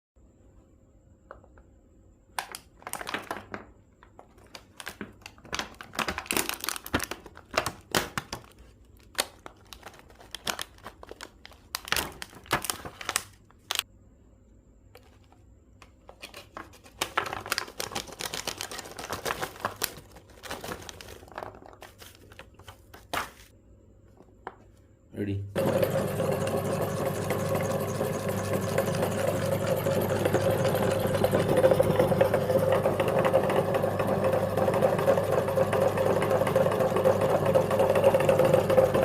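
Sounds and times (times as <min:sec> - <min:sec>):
plastic wrappers crinkling: 0:02.8 - 0:13.8, 0:16.1 - 0:23.5.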